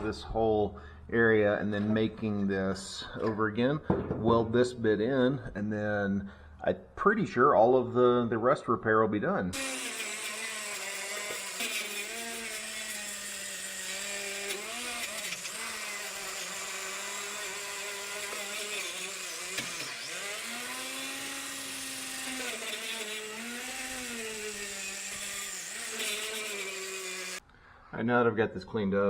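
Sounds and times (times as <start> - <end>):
power tool abrading metal: 9.5 - 27.4.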